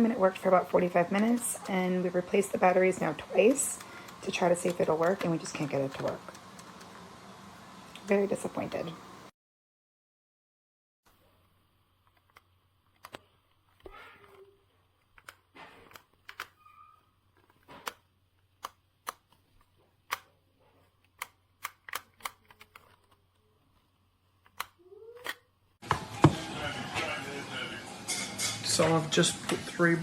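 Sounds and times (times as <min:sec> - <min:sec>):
plastic toy clicking and scraping: 0:03.0 - 0:07.0, 0:20.0 - 0:23.3.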